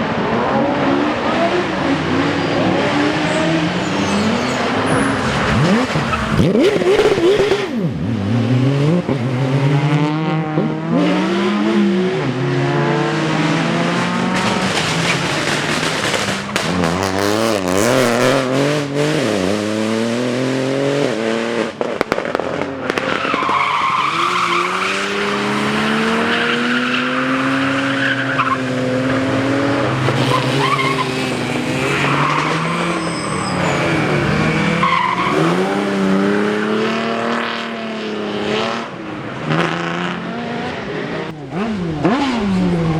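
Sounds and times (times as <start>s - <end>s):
rally car engine revving: 0.0s - 42.9s
tyres squealing: 30.0s - 36.0s.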